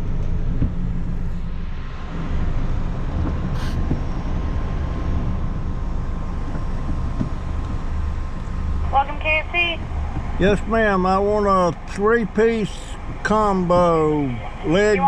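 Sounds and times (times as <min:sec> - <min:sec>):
car engine: 0:00.0 - 0:15.0
road noise: 0:00.0 - 0:15.0.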